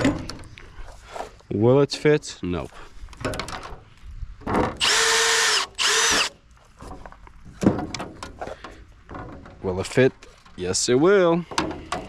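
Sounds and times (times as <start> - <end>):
knocks and handling noise: 3.1 - 4.8, 6.5 - 10.6, 11.4 - 12.0
power drill whining: 4.8 - 6.4.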